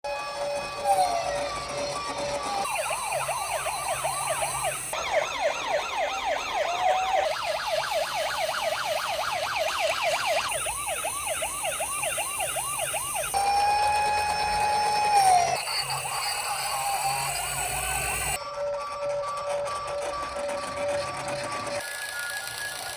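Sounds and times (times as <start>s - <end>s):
emergency siren yelping: 0.1s - 18.4s
steady siren tone: 0.1s - 18.4s.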